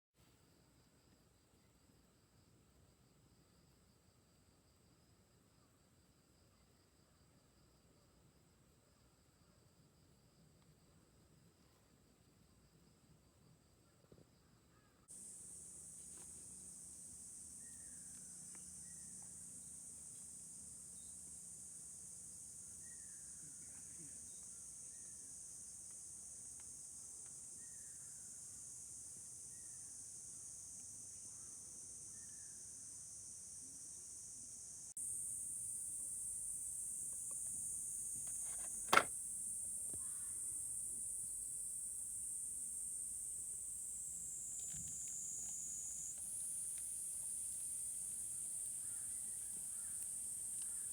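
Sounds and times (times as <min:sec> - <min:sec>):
high-pitched insect chorus: 0:15.1 - 0:50.9
sharp knock: 0:38.9 - 0:39.1.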